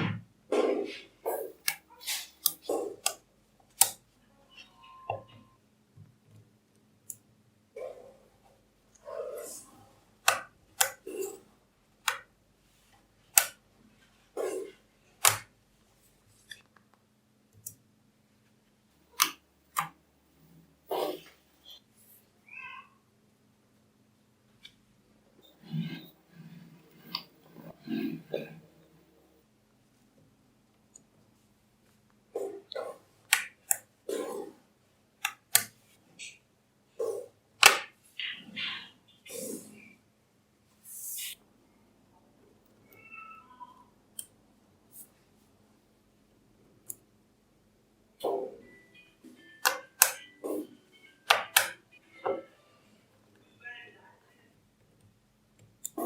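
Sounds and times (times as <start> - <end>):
magnetic balls snapping together: 3.8 - 4.0, 10.2 - 11.4, 12.0 - 12.3, 13.3 - 13.6, 15.2 - 15.5, 33.3 - 33.9, 35.2 - 35.8, 37.6 - 38.0, 49.6 - 50.6, 51.3 - 51.8.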